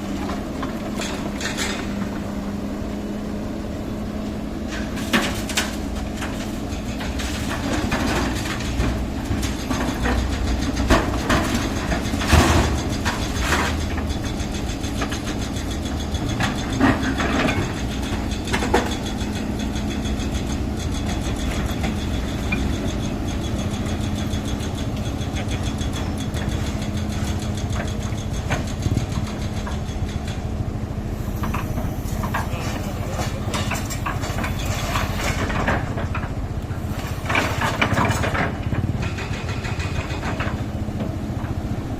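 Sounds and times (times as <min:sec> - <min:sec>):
construction machine engine running: 0:00.0 - 0:41.9
sharp metal clanks and knocks: 0:31.4 - 0:36.3.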